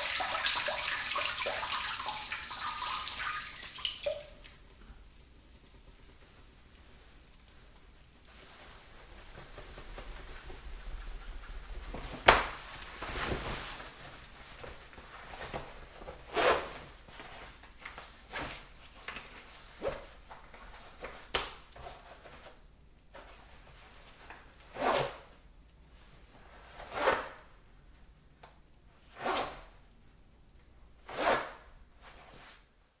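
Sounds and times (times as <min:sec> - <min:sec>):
person urinating into toilet: 0:00.0 - 0:08.4.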